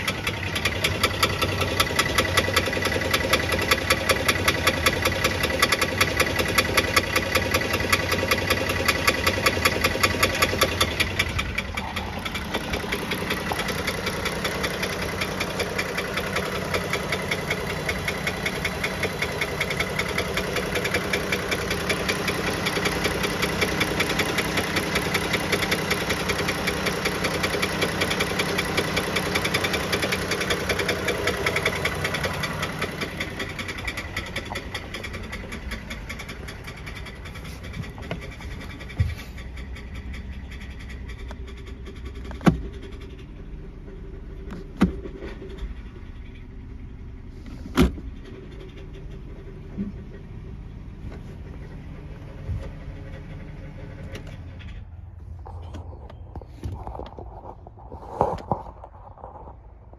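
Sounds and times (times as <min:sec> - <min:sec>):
engine idling with regular knock: 0:00.0 - 0:59.9.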